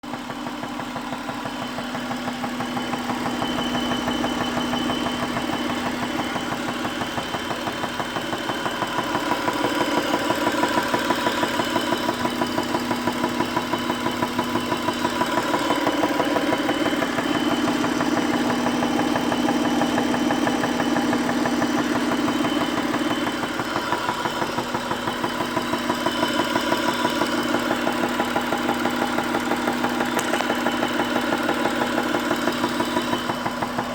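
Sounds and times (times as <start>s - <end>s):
car engine idling with ticking: 0.0s - 33.9s.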